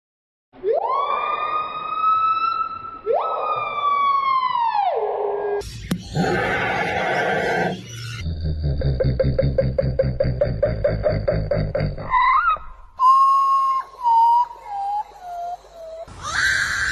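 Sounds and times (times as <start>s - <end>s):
siren-like wail: 0.6s - 5.6s
sharp click: 5.8s - 6.2s.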